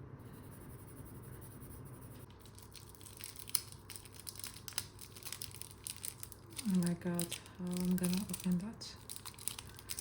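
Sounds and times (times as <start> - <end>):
wrapper crinkling: 2.3 - 10.0.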